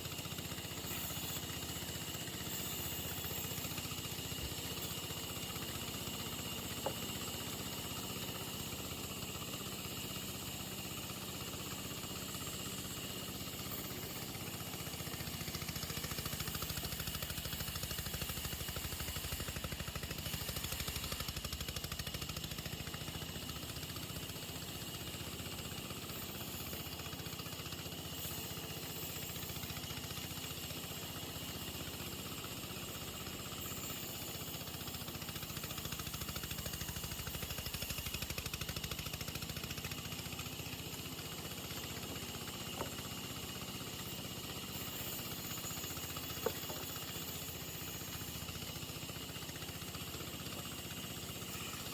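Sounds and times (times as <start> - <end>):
engine droning: 0.0 - 51.9.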